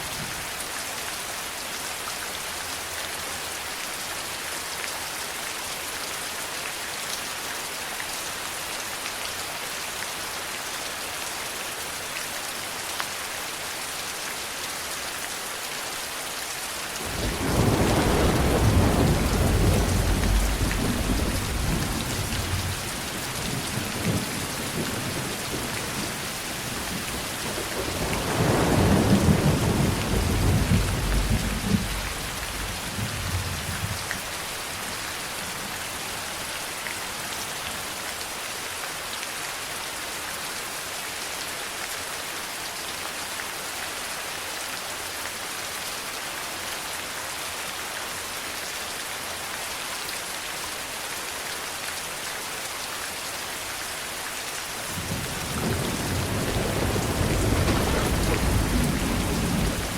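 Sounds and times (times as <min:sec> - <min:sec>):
heavy rain: 0:00.0 - 0:59.9
thunder rolling: 0:17.0 - 0:22.8, 0:27.5 - 0:34.0, 0:55.0 - 0:59.9.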